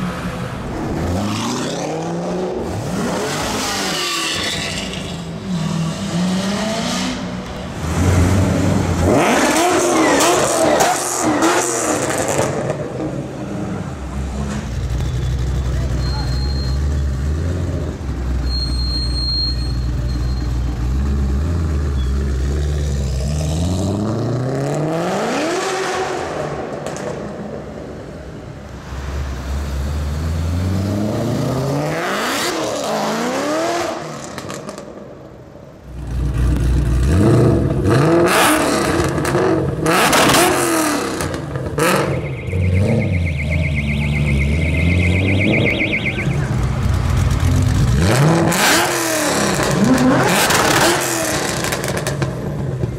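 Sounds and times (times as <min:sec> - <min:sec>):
car engines accelerating hard: 0:05.3 - 0:18.4, 0:29.0 - 0:34.8, 0:35.9 - 0:52.9
pulsing high beep: 0:16.0 - 0:17.0, 0:18.4 - 0:20.6, 0:41.8 - 0:46.6.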